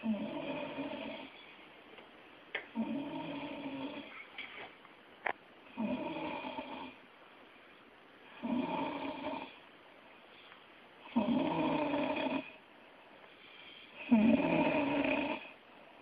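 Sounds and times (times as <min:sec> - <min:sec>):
person snoring: 0:00.0 - 0:01.4, 0:02.7 - 0:04.1, 0:05.7 - 0:07.0, 0:08.3 - 0:09.6, 0:11.0 - 0:12.6, 0:13.9 - 0:15.6
quiet breaths: 0:00.0 - 0:04.7, 0:05.7 - 0:16.0.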